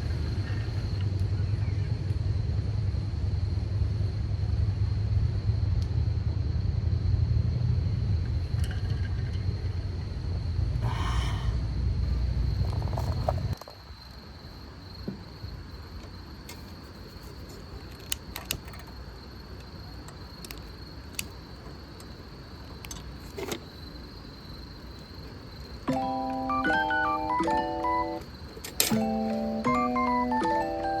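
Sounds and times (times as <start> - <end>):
low rumble: 0.0 - 13.6.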